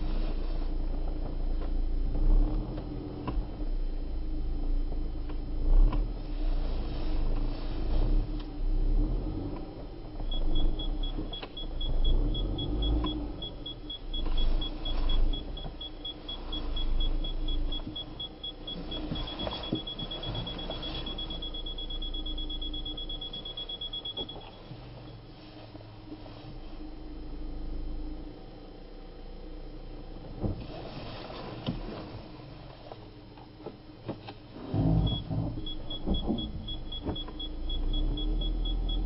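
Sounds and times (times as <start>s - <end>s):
car engine rumble: 0.0s - 39.0s
parking sensor beeping: 9.9s - 25.3s, 34.7s - 39.0s.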